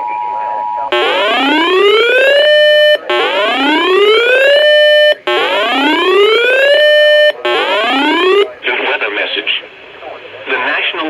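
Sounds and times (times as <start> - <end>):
electronic whooping alert tone: 0.9 - 8.5.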